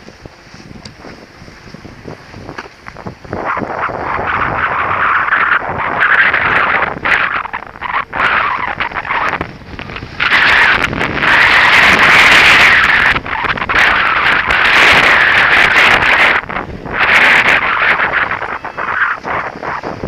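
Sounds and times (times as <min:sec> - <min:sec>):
skis scraping over snow: 0:00.0 - 0:07.3
wind on microphone: 0:00.0 - 0:20.0.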